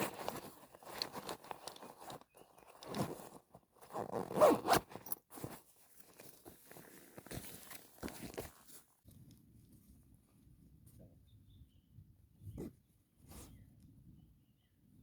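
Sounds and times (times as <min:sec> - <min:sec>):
zipper being pulled: 0:00.0 - 0:05.6.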